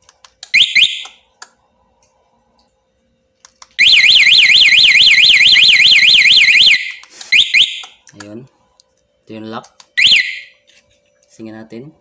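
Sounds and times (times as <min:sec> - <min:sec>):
motorcycle alarm siren wailing: 0:00.6 - 0:01.2, 0:03.8 - 0:07.9, 0:10.0 - 0:10.6.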